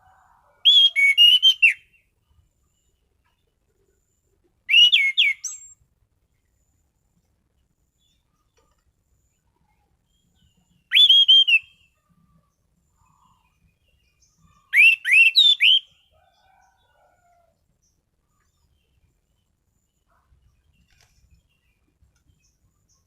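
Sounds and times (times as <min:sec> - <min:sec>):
thrush singing whistled notes: 0:00.6 - 0:02.1, 0:04.7 - 0:05.8, 0:10.3 - 0:12.0, 0:14.2 - 0:16.1.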